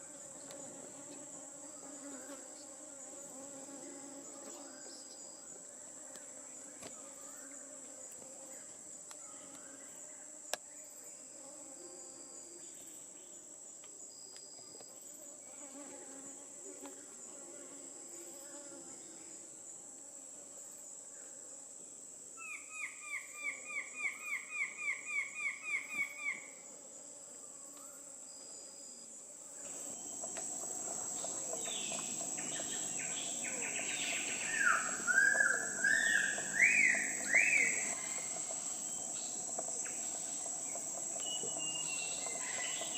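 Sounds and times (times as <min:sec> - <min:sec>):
high-pitched insect drone: 0:29.7 - 0:42.9
bird calls with downslurred notes: 0:29.8 - 0:42.9
rising whistled bird notes: 0:31.7 - 0:38.3.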